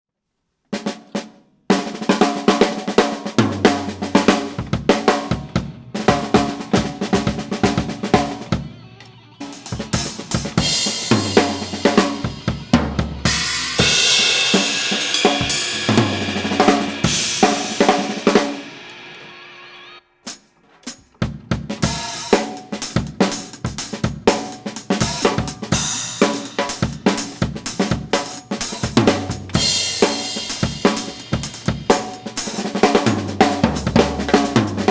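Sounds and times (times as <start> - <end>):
drum kit playing: 0.8 - 34.9
cymbal crashes: 9.5 - 20.0.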